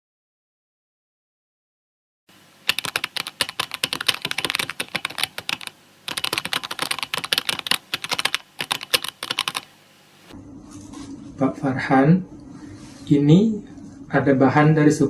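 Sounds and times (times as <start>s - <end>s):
fast computer keyboard typing: 2.7s - 9.8s.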